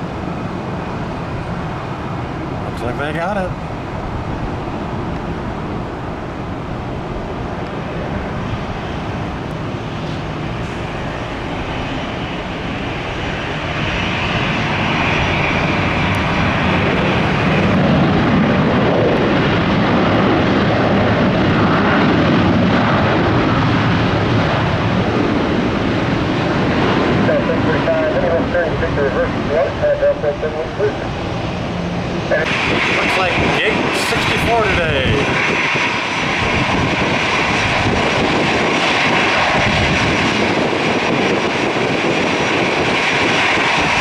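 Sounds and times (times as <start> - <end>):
high engine whine: 0.0 - 44.0
jet engines rushing: 0.0 - 44.0.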